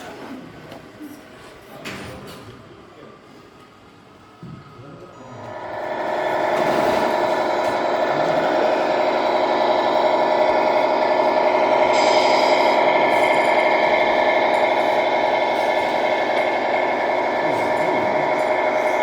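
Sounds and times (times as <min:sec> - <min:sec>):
model truck mechanical drone: 0:05.2 - 0:19.0.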